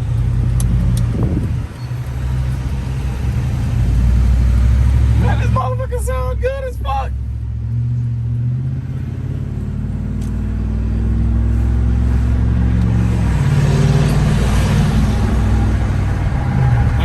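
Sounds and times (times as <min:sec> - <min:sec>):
deep loud engine exhaust: 0:00.0 - 0:17.0.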